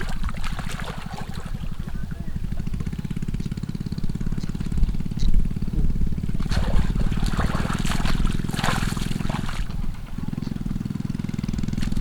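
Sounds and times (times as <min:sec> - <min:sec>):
water splashing and trickling: 0:00.0 - 0:02.2, 0:06.2 - 0:10.4
small engine running: 0:00.0 - 0:12.0.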